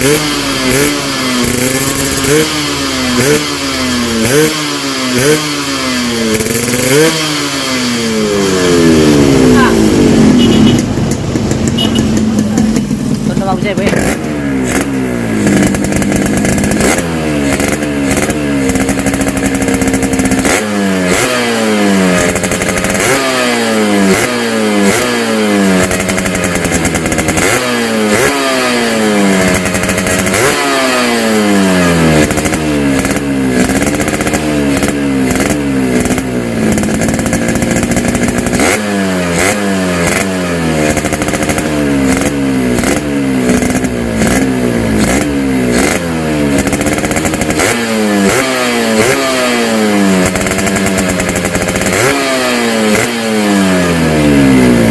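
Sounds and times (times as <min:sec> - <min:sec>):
two-stroke engine revving: 0:00.0 - 0:54.9.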